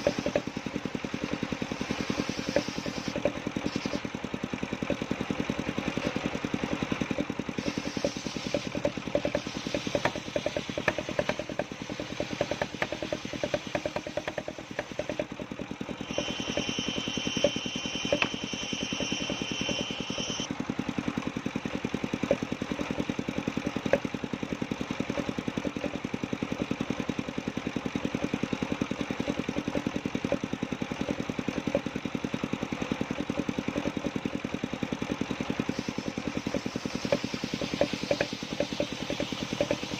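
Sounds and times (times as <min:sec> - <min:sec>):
sawmill engine running: 0:00.0 - 0:39.9
high steady whine: 0:15.9 - 0:20.5.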